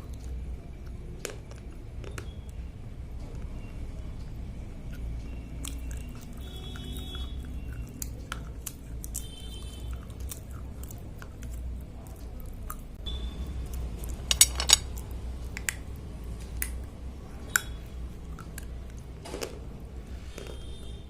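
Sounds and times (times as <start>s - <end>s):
slate pencils crunching and cracking: 14.0s - 15.8s.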